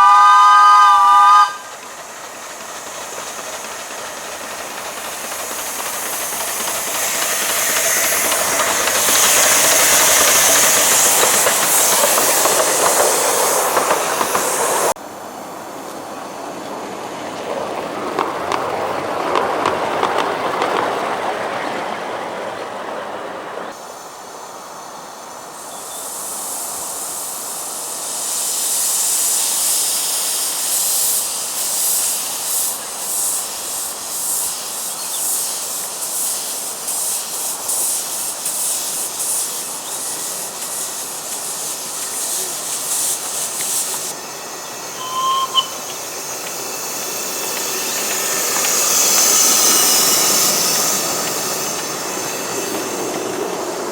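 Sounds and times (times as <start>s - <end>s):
miniature train rolling on track: 0.0s - 15.0s, 15.7s - 24.3s, 25.0s - 53.9s
steam venting hiss: 0.0s - 17.3s, 23.7s - 53.9s
brief tone: 44.9s - 46.1s.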